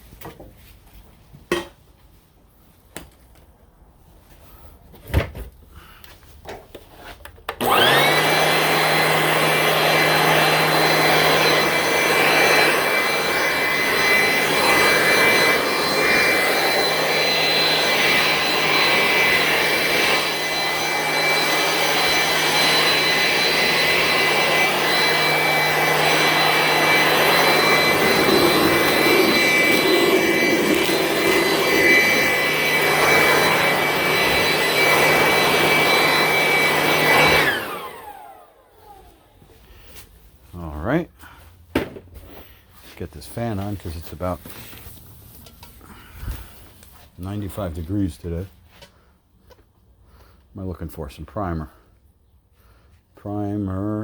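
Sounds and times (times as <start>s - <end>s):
leaf blower whining: 7.5s - 40.1s, 42.3s - 50.5s.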